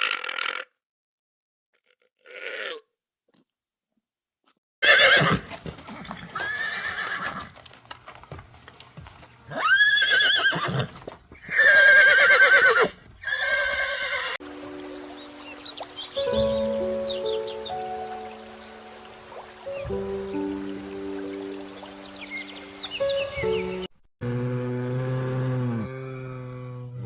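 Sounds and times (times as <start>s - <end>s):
horse neighing: 4.8s - 5.4s, 9.5s - 14.4s.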